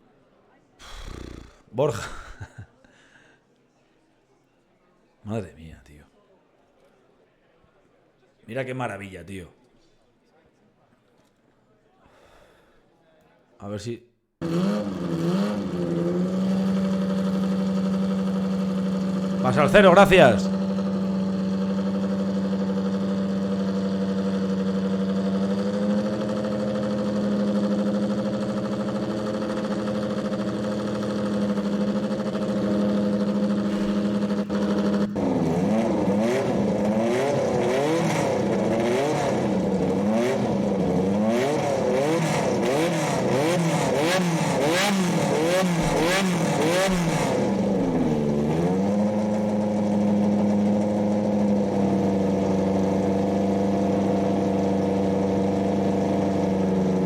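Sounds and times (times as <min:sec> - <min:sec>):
car engine idling and revving: 0:14.4 - 0:57.0.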